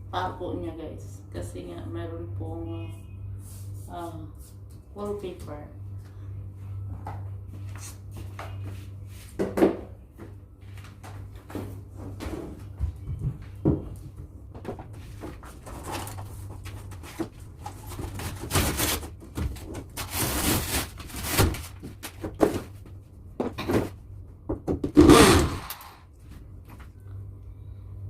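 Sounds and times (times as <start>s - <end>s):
wall scraping and tearing: 15.6s - 22.0s
loud rasping burst: 25.0s - 26.0s.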